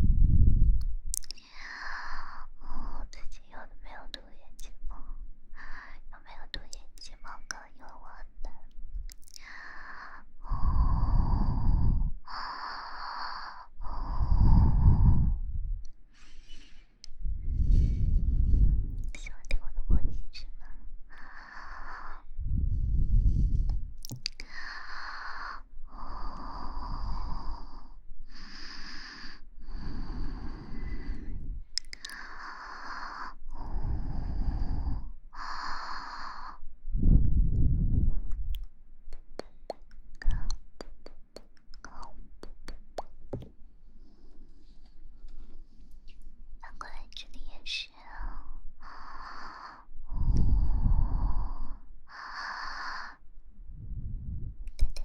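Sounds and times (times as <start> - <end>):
deep rush of air: 0.0 - 0.8, 10.5 - 12.2, 14.0 - 16.3, 17.2 - 19.0, 22.2 - 24.0, 36.8 - 38.6, 50.0 - 51.8, 53.6 - 54.7
close breathing into microphone: 1.3 - 3.4, 5.0 - 7.1, 9.3 - 19.3, 21.1 - 38.3, 39.2 - 46.2, 47.9 - 55.0
faint clicks: 31.8 - 32.3.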